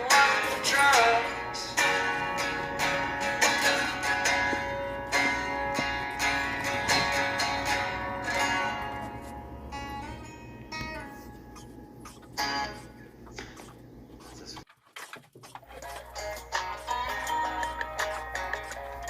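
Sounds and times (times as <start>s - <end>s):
country music strummed guitar: 0.0s - 11.3s, 15.8s - 19.0s.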